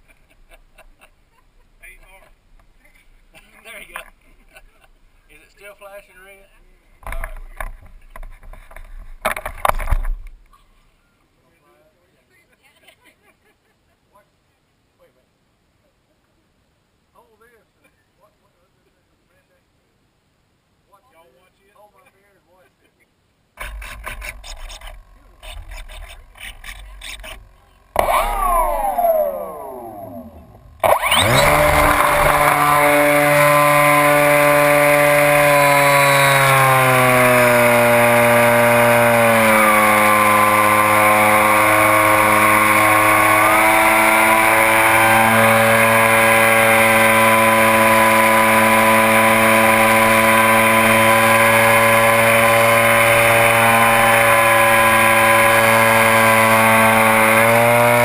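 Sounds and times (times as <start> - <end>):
model plane motor buzzing drone: 23.6 - 58.0
short falling whine: 27.4 - 54.3.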